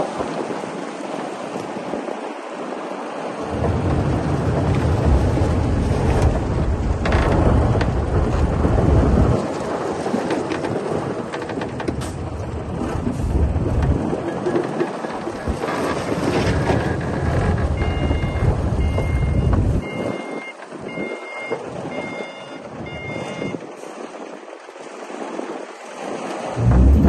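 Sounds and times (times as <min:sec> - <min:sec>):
bulldozer engine and tracks clattering: 0:00.0 - 0:24.7, 0:26.6 - 0:27.0
heavy low rumble: 0:26.6 - 0:27.0.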